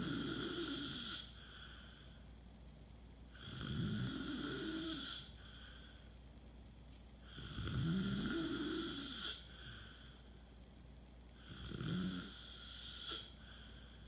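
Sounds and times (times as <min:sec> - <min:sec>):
man snoring: 0:00.0 - 0:01.3, 0:07.3 - 0:09.4, 0:11.5 - 0:13.3.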